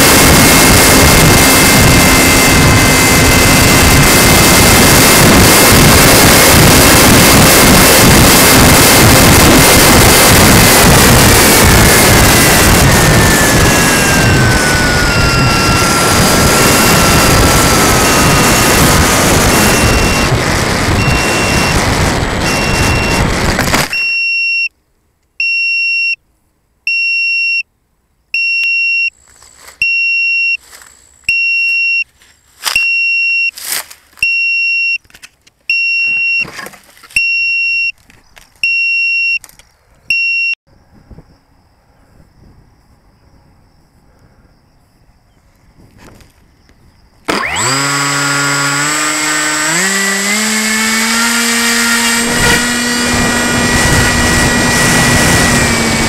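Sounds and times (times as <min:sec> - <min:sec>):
electric motor and propeller whine: 0:00.0 - 0:24.0, 0:47.2 - 0:56.0
short high electronic beeps: 0:18.0 - 0:20.3, 0:21.0 - 0:21.8, 0:22.4 - 0:23.3, 0:23.9 - 0:24.7, 0:28.4 - 0:29.1, 0:29.8 - 0:30.6, 0:31.3 - 0:32.1, 0:32.7 - 0:33.6, 0:34.2 - 0:35.0, 0:35.7 - 0:36.5, 0:37.2 - 0:38.0, 0:38.6 - 0:39.4, 0:40.1 - 0:40.6
knocks and handling rustles: 0:35.0 - 0:37.2.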